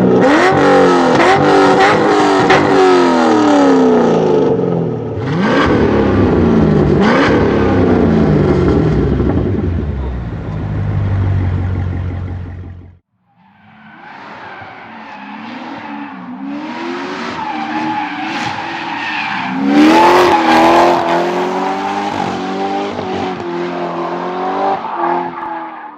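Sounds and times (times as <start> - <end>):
engine revving hard: 5.2 - 9.6, 19.4 - 24.8
deep engine rumble: 5.9 - 13.1.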